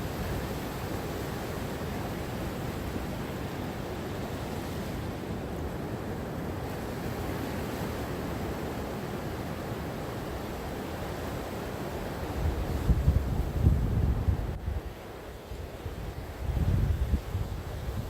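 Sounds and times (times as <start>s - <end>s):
gentle ocean waves: 0.0s - 18.0s.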